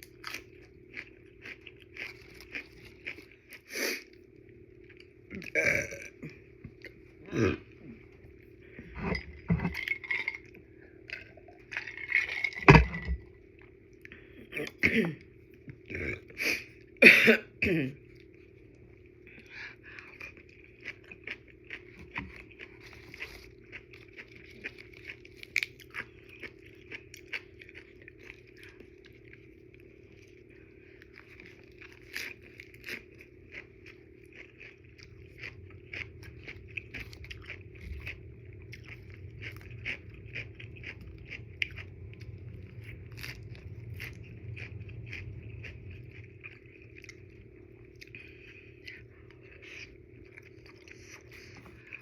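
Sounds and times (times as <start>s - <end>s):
chewing noodles: 0.0s - 12.5s, 18.0s - 52.0s
loud burps: 5.3s - 6.3s, 7.3s - 7.7s.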